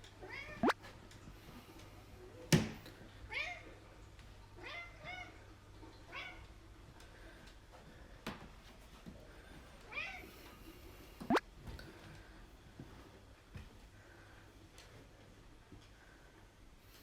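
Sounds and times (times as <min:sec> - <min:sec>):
cat meowing: 0:00.2 - 0:00.8.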